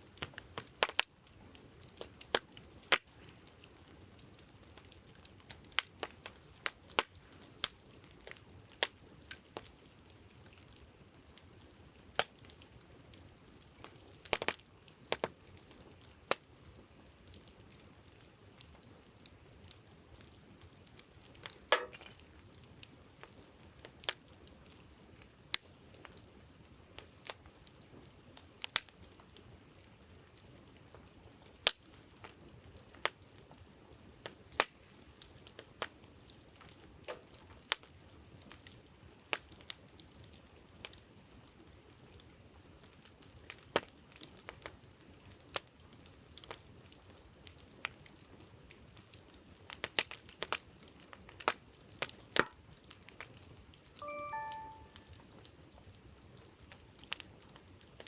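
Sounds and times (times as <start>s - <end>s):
campfire crackling and popping: 0.0s - 58.0s
faint steady hiss: 53.5s - 55.4s.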